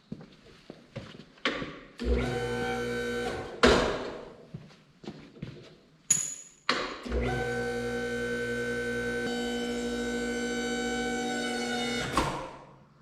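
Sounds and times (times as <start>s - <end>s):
electric motor humming: 7.2s - 12.2s.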